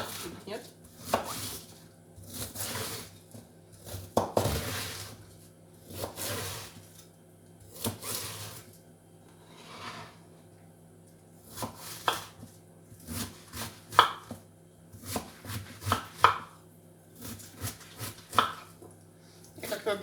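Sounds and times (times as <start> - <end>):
knife chopping on cutting board: 0.9 - 1.6, 3.8 - 5.1, 5.8 - 6.7, 7.7 - 8.4, 11.4 - 16.6, 17.2 - 18.9.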